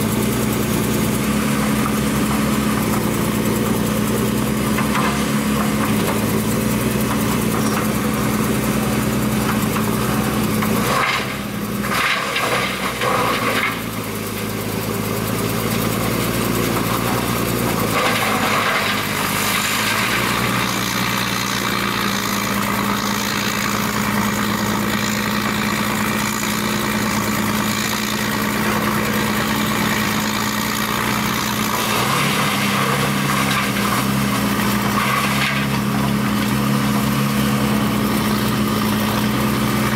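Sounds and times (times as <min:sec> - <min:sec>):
heavy diesel machinery running: 0:00.0 - 0:39.9
wood grinder grinding: 0:00.0 - 0:39.9.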